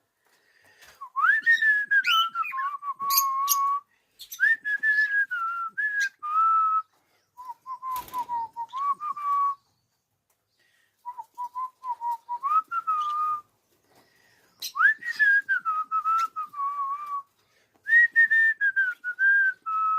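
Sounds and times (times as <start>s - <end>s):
cockatiel whistling a tune: 1.2s - 9.6s, 11.1s - 13.4s, 14.6s - 17.2s.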